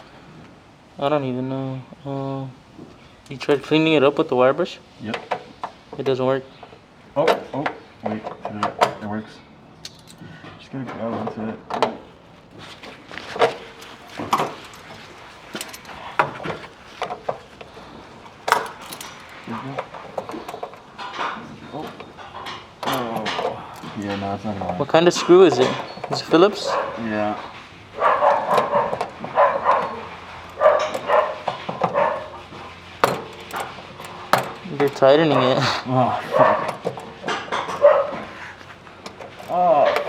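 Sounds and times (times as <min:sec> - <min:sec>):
hand tool scraping rusted metal: 0:12.6 - 0:40.0
dog barking: 0:26.6 - 0:27.1, 0:28.0 - 0:32.4, 0:35.3 - 0:36.7, 0:37.7 - 0:38.3.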